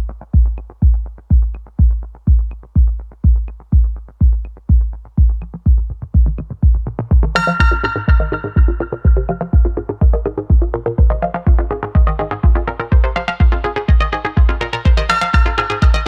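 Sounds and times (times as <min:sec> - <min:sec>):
bass drum beat: 0:00.0 - 0:16.0
bright melody: 0:07.4 - 0:09.9.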